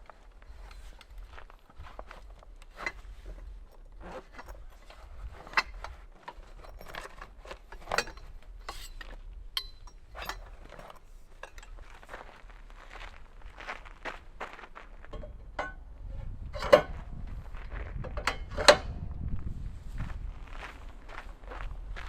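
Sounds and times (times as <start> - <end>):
camping gear rustling: 0.0 - 15.6
small sharp clicks and clinks: 6.4 - 11.8.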